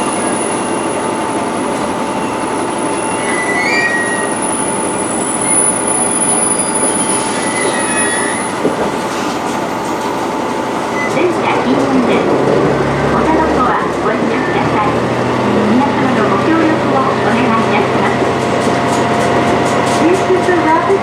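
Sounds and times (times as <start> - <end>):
train wheels on rails: 0.0 - 21.0
wheel squeals: 2.2 - 10.2.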